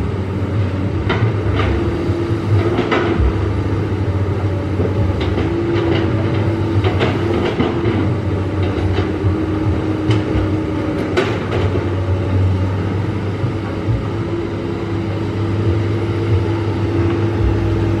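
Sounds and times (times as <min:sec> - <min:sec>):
excavator diesel engine running: 0:00.0 - 0:18.0
machine knocks and clanks: 0:00.9 - 0:04.0, 0:04.7 - 0:12.5.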